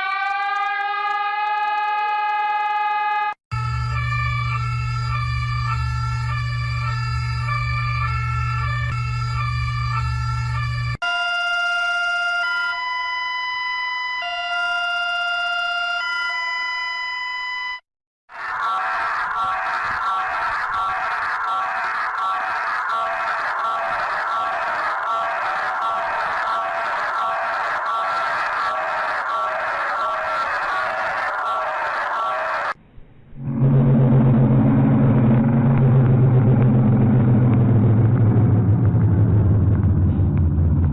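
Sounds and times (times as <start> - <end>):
low droning alarm tone: 3.6 - 17.8, 33.4 - 40.7
low rumble: 32.8 - 40.9.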